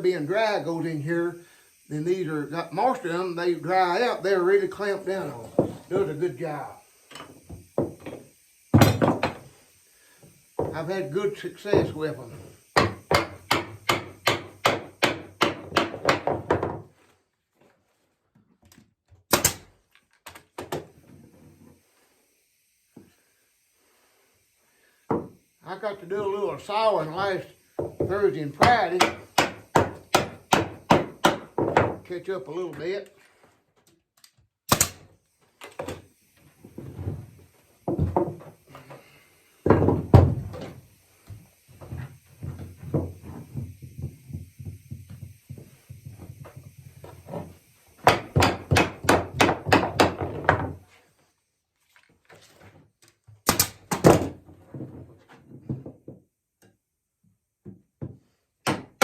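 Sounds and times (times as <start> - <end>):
wooden knocks and thunks: 14.7 - 17.0, 25.1 - 25.4, 27.8 - 32.1, 36.7 - 38.6, 39.6 - 40.8, 47.3 - 50.8, 53.9 - 56.3
hammer blows on wood: 27.6 - 32.1.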